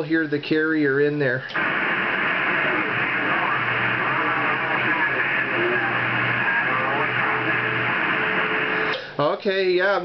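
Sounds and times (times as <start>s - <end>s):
radio band noise hiss: 1.2s - 10.0s
weak garbled radio voice: 1.5s - 8.9s
steady carrier tone: 1.6s - 9.0s.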